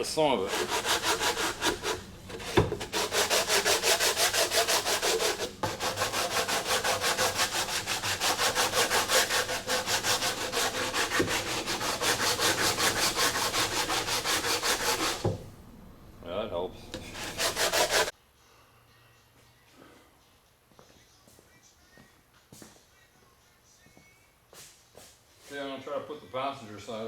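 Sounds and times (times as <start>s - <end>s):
abrasive scraping strokes: 16.6s - 18.1s.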